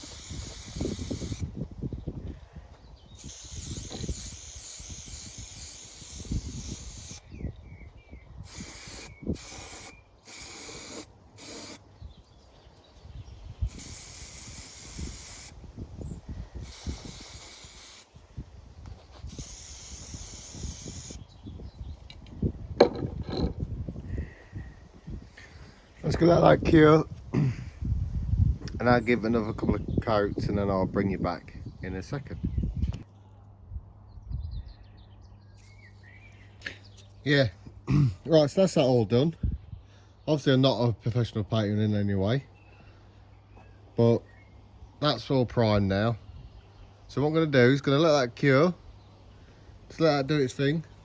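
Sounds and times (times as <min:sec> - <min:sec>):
aerosol spray can hissing: 0:00.0 - 0:01.5, 0:03.2 - 0:07.2, 0:08.4 - 0:11.8, 0:13.7 - 0:15.6, 0:16.6 - 0:18.1, 0:19.2 - 0:21.2.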